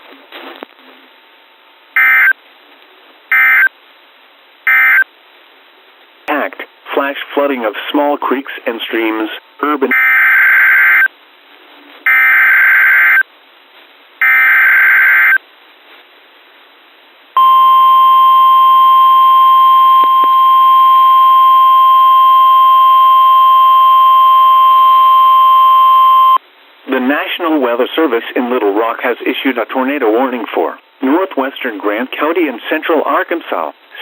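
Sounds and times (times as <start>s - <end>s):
steady warning alarm tone: 2.0s - 2.4s, 3.3s - 3.7s, 4.7s - 5.0s, 17.4s - 26.4s.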